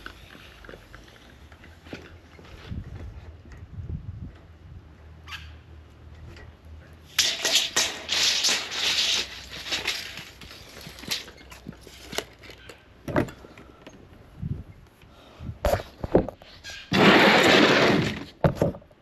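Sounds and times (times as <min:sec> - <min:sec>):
timber and tools rattling: 0:07.2 - 0:14.0.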